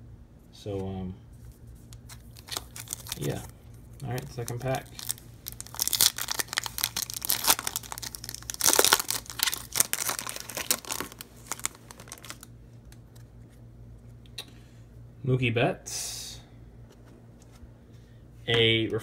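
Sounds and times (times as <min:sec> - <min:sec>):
wrapper crinkling: 0:02.0 - 0:12.5
wrapper ripping: 0:02.0 - 0:12.5.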